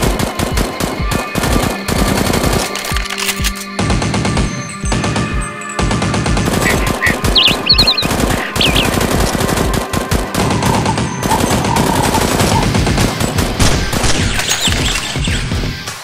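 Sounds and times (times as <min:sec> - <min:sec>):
rapid automatic gunfire: 0:00.0 - 0:16.0
metallic ringing tones: 0:04.5 - 0:09.6.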